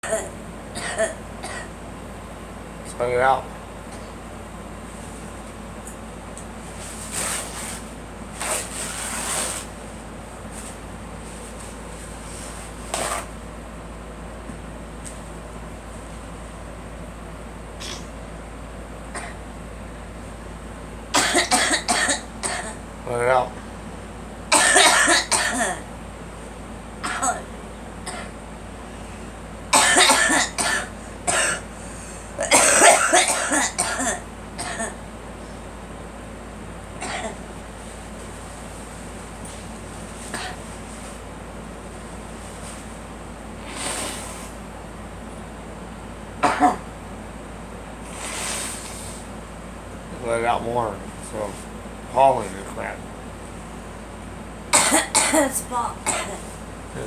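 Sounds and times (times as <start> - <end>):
girl coughing: 0.0 - 1.8, 19.2 - 19.4, 21.2 - 22.8, 24.5 - 25.9, 27.0 - 28.4, 29.8 - 31.7, 32.4 - 35.0, 37.0 - 37.4, 40.3 - 40.6, 46.4 - 46.9, 54.7 - 56.6.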